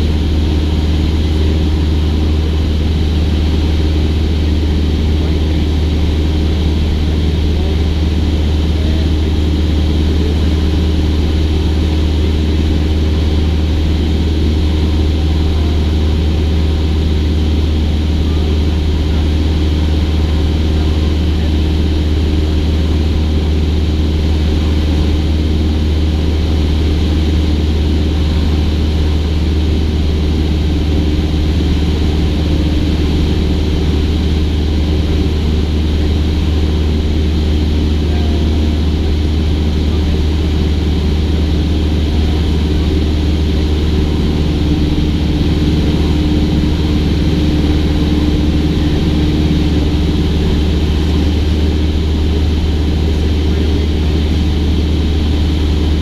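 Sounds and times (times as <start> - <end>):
propeller plane engine droning: 0.0 - 56.0.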